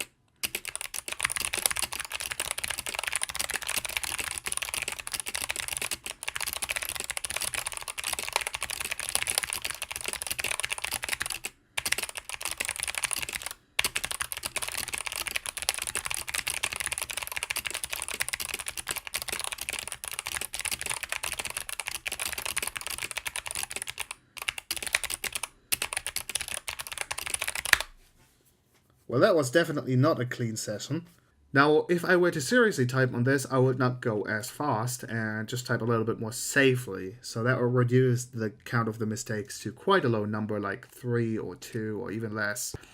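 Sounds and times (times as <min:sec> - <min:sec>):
fast typing on clicky keyboard: 0:00.0 - 0:27.9.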